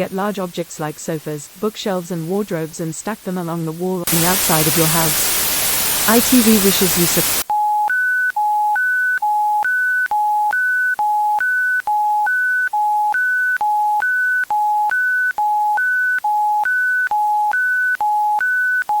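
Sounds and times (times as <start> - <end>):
two-tone hi-lo alert signal: 4.1 - 8.3.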